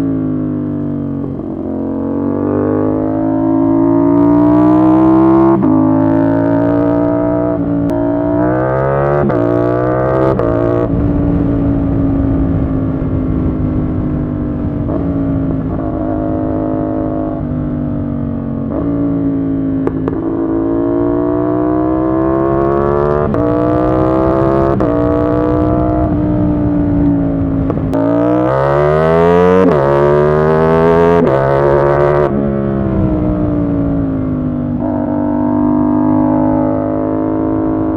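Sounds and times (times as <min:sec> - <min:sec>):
motorcycle engine accelerating: 0:00.0 - 0:37.9.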